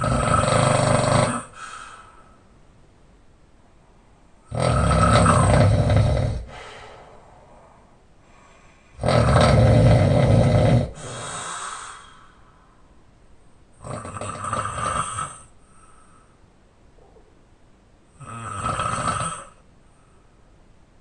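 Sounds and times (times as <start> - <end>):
man snoring: 0.0 - 1.7, 4.5 - 6.7, 8.9 - 12.2, 13.8 - 15.5, 18.2 - 19.6
quiet exhale: 1.5 - 2.5, 6.4 - 9.0, 11.0 - 13.0, 15.5 - 17.3, 19.8 - 20.5.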